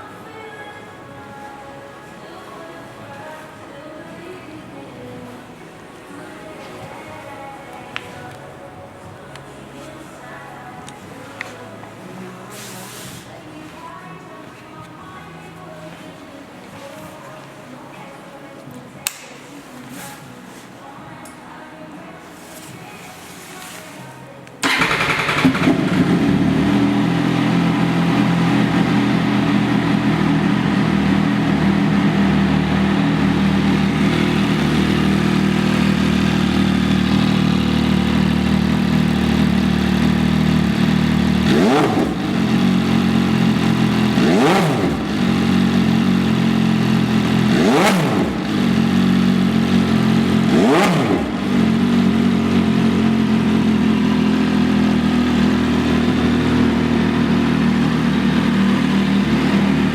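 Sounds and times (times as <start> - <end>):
engine revving: 24.6 - 59.9
motorcycle engine idling: 24.6 - 59.9.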